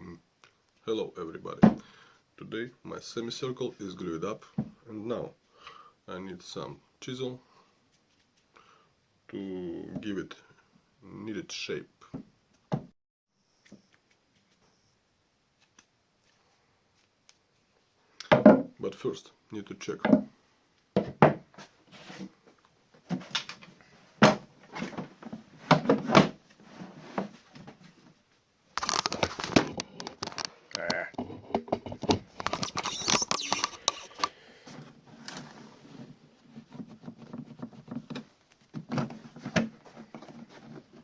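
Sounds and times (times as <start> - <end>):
wood rubbing and scraping on wood: 28.8 - 34.3, 35.1 - 38.4.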